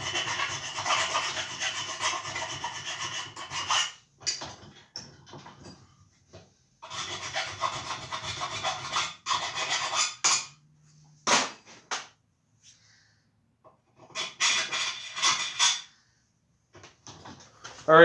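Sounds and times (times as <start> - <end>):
file rasping on steel: 0.0 - 4.0, 6.8 - 10.6, 14.0 - 15.9.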